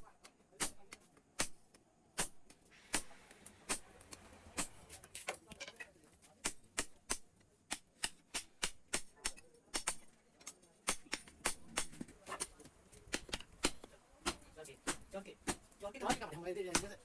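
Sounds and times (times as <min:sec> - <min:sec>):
hammer striking steel on anvil: 0:01.4 - 0:04.0, 0:13.1 - 0:17.0.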